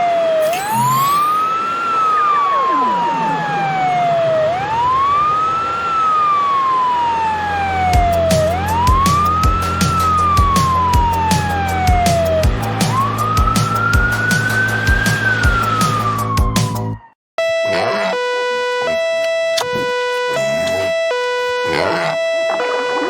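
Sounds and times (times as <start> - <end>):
ambulance siren wailing: 0.0 - 23.0
steady thumping beat: 8.0 - 16.8.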